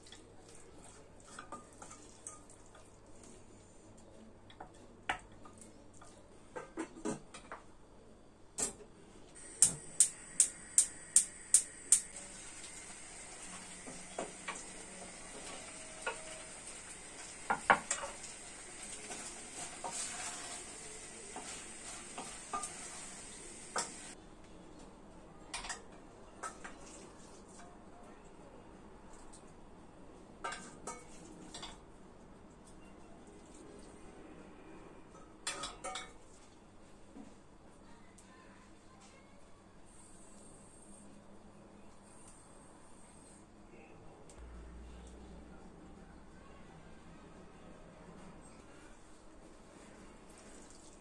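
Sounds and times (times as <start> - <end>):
sizzling hiss: 9.4 - 24.2.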